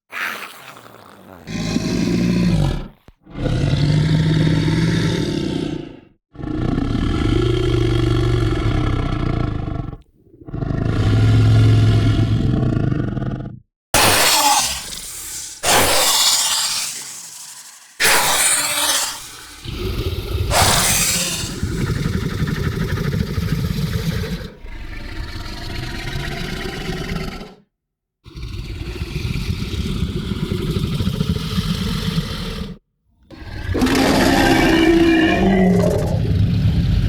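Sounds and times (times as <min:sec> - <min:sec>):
breathy rasps: 0:00.1 - 0:03.6, 0:14.0 - 0:22.1
monster growling: 0:00.1 - 0:27.6, 0:28.3 - 0:37.0.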